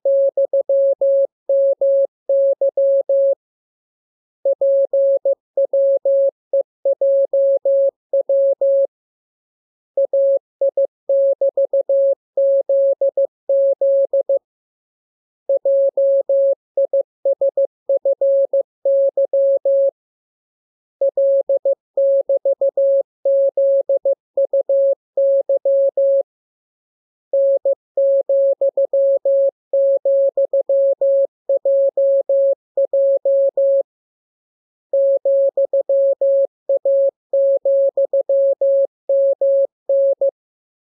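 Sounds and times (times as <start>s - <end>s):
morse code tone: 34.9s - 40.4s.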